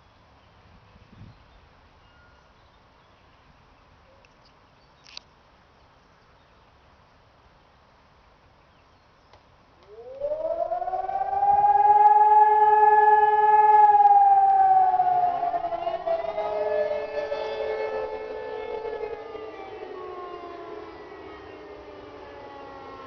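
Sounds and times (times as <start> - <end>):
civil defence siren wailing: 9.8 - 23.0
second siren rising: 9.8 - 23.0.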